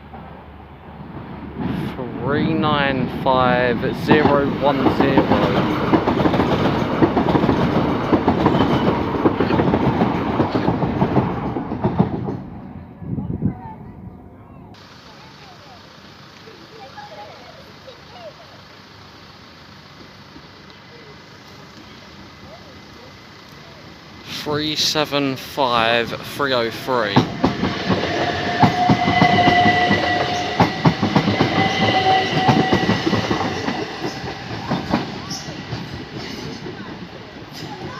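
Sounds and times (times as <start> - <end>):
train wheels clattering over rails: 0.0 - 12.7, 25.6 - 37.9
train rumble: 0.0 - 37.9.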